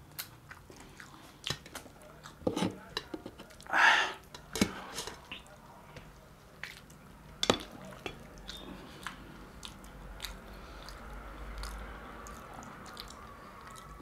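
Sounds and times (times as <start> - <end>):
chewing and biting food: 0.0 - 2.5, 6.6 - 14.0.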